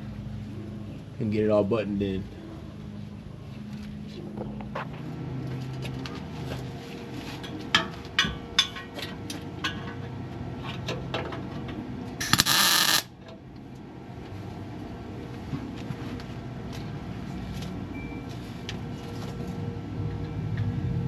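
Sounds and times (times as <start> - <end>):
welder crackling burst: 12.2 - 13.1.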